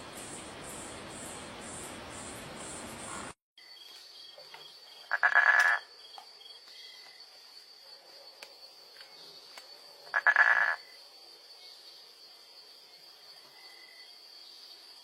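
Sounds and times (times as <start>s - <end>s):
insects chirping: 0.0s - 15.0s
frog call: 5.1s - 5.9s, 10.0s - 10.9s.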